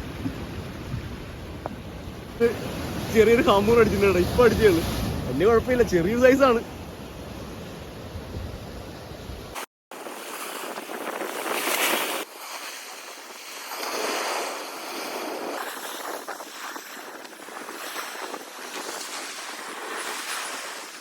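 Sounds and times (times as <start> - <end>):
wind buffeting microphone: 0.0 - 9.6
sea surf breaking: 0.0 - 21.0.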